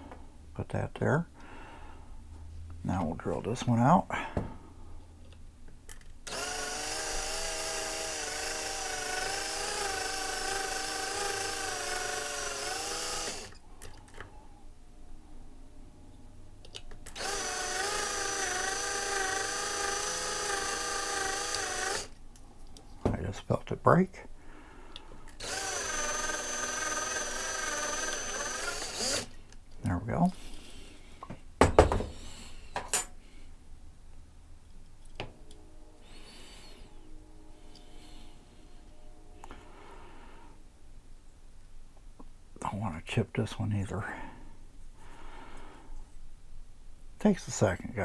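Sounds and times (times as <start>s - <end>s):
small power drill whining: 6.0s - 14.3s, 16.8s - 22.2s, 25.3s - 29.5s, 35.1s - 39.6s.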